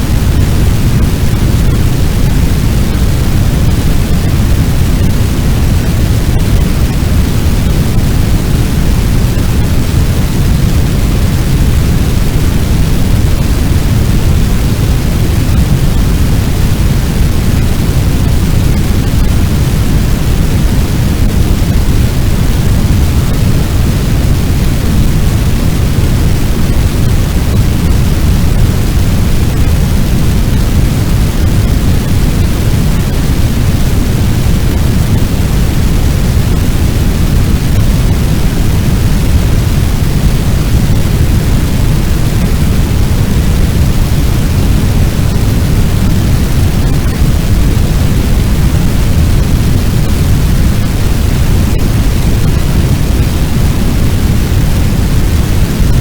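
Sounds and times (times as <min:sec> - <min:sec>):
low rumble of large fire: 0:00.0 - 0:56.0.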